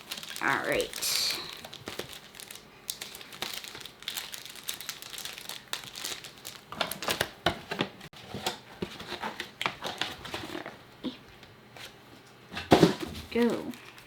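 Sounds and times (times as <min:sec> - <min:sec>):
plastic wrapping crinkling and tearing: 0:00.0 - 0:07.9, 0:13.4 - 0:14.0.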